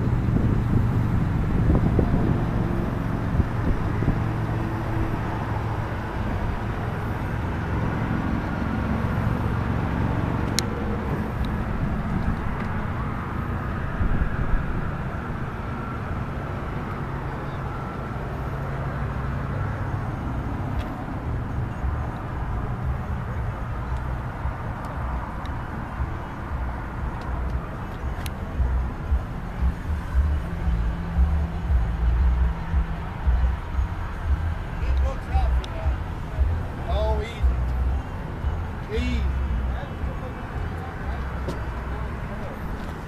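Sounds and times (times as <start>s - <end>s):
car engine running: 18.4s - 43.0s.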